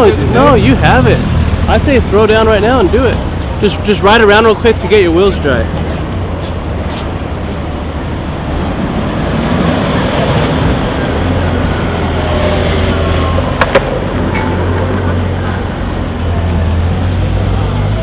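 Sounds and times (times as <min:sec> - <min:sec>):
skateboard wheels rolling on pavement: 0:00.0 - 0:18.0
skateboard sharp clacks: 0:13.6 - 0:14.0.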